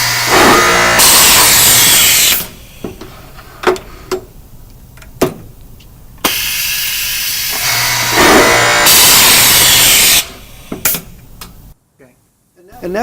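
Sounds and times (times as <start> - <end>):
drilling machine hissing: 0.0 - 2.9, 6.2 - 11.0.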